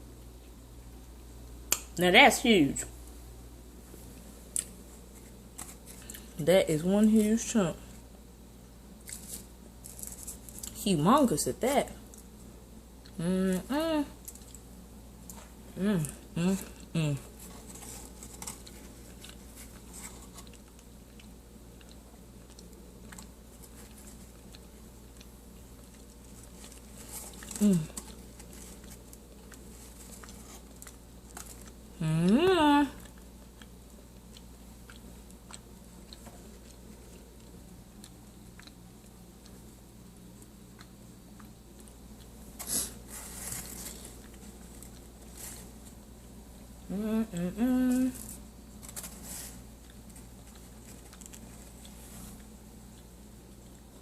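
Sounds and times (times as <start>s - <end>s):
chewing and crunching: 4.2s - 6.4s, 8.9s - 10.8s, 14.2s - 46.9s, 48.1s - 54.0s
person humming: 13.1s - 14.2s, 15.8s - 17.3s, 27.5s - 28.0s, 32.0s - 33.0s, 46.9s - 48.2s.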